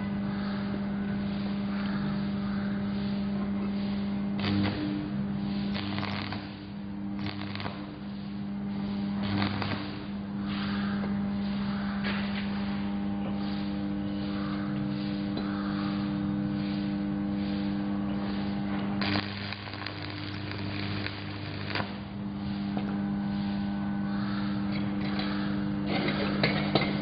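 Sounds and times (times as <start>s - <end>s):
welding machine buzzing hum: 0.0s - 27.0s
welding arc crackling: 1.7s - 14.5s, 15.1s - 23.8s.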